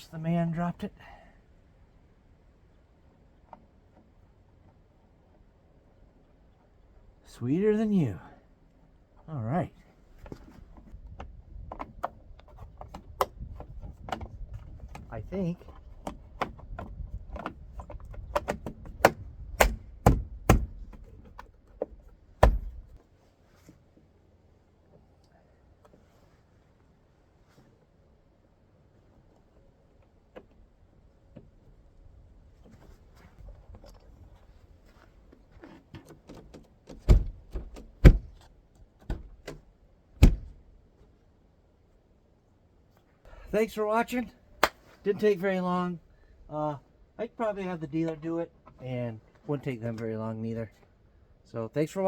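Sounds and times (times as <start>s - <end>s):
sharp knocks of cab door: 18.3s - 21.1s, 22.4s - 22.9s, 37.0s - 38.4s, 39.1s - 39.6s, 40.2s - 40.6s.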